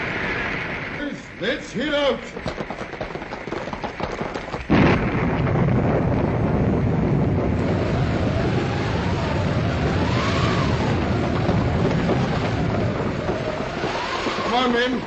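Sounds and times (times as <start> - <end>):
dense steady rumble: 0.0 - 15.0
wind-like howl: 0.0 - 15.0.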